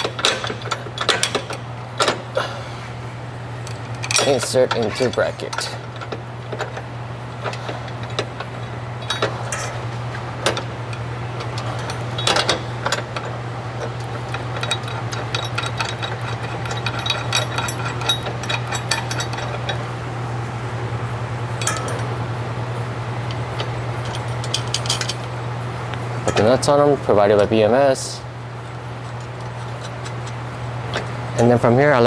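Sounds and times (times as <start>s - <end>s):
metal bolts clinking and tapping: 0.0s - 2.2s, 3.6s - 19.9s, 21.5s - 22.3s, 23.1s - 26.7s
steady low hum: 0.0s - 32.0s.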